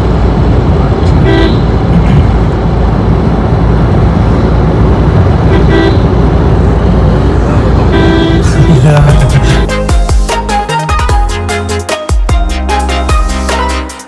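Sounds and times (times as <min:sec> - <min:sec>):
loud low rumbling: 0:00.0 - 0:10.1
horn-like toot: 0:07.9 - 0:10.5.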